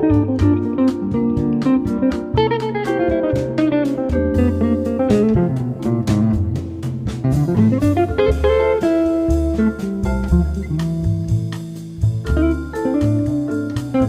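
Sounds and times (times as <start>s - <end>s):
instrumental guitar music with beat: 0.0s - 14.0s.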